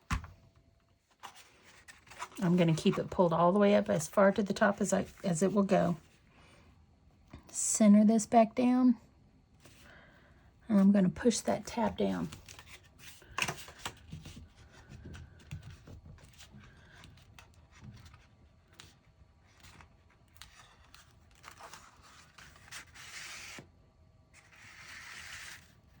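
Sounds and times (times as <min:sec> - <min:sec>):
paper and card rustling: 0:01.1 - 0:06.0, 0:11.7 - 0:23.7, 0:24.4 - 0:26.0.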